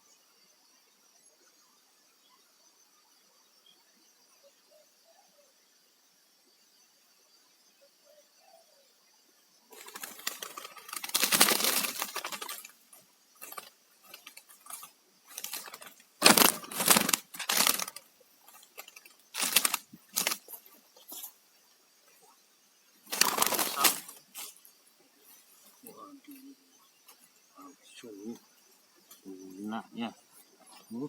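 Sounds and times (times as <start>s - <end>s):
rustling and crackling: 9.8s - 21.4s, 23.0s - 26.4s.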